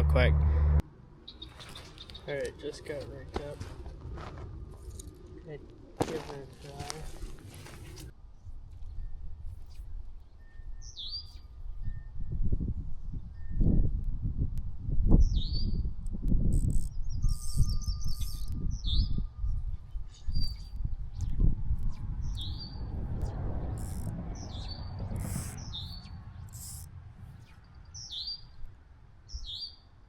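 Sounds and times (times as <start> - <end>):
songbirds chirping: 1.1 - 4.0, 4.6 - 12.0, 16.9 - 30.0.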